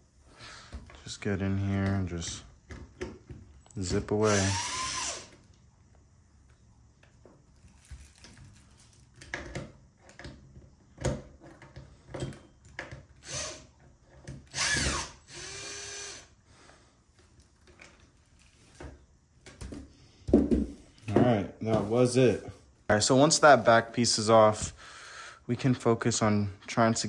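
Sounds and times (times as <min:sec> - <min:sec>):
power drill whining: 0:03.8 - 0:05.4, 0:13.2 - 0:13.7, 0:14.5 - 0:16.3.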